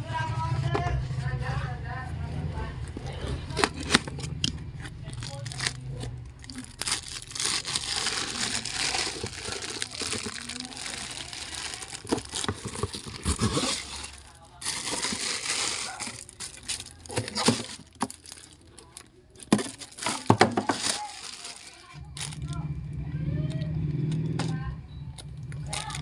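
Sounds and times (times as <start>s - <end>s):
plastic packaging crinkling: 3.4s - 22.6s, 25.6s - 26.0s.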